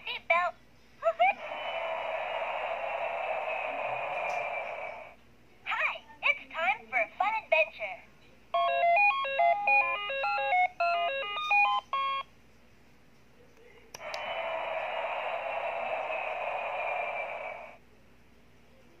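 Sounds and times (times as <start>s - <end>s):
toy rushing noise: 1.3s - 5.2s, 14.0s - 17.8s
toy electronic beeping tune: 8.6s - 12.3s.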